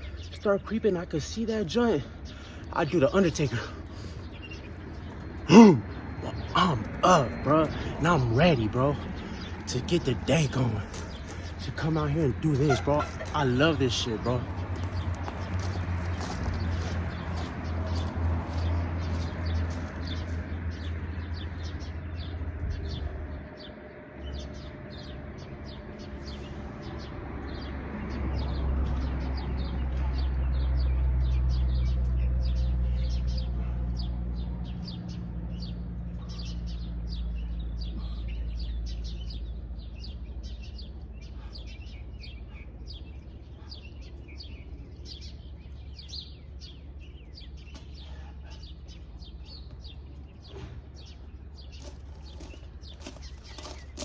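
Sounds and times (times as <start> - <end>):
small birds chirping: 0.0 - 54.0.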